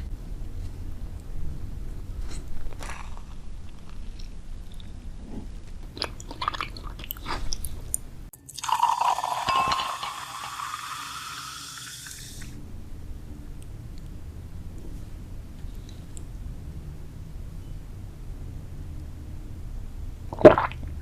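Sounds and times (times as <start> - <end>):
candy crunching and chewing: 2.7 - 5.0, 5.9 - 7.8.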